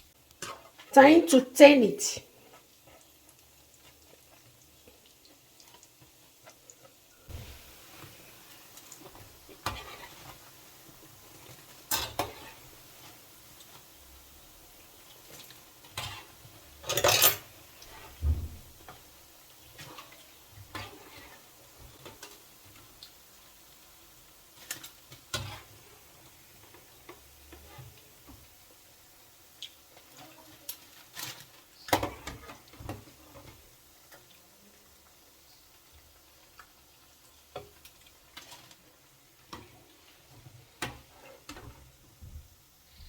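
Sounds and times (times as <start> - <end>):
oil sizzling: 0.0 - 43.0
utensil scraping a pan: 9.1 - 10.4, 11.9 - 12.7, 19.8 - 22.4.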